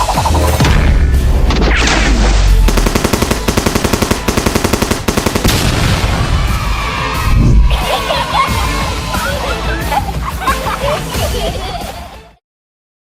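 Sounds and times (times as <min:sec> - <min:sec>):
rapid sharp bangs: 0:01.4 - 0:06.9.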